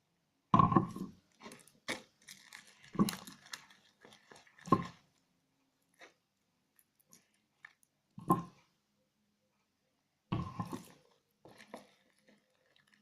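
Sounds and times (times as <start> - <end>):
slime handling noise: 0.8 - 5.3, 10.5 - 13.0.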